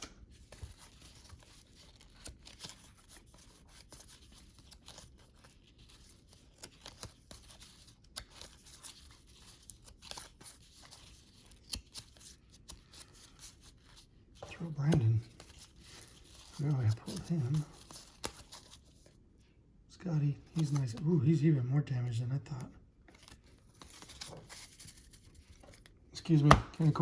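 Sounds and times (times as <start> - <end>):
cards flicking and rustling: 0.0 - 19.2, 20.4 - 21.2, 23.0 - 27.0
card snaps: 26.2 - 27.0.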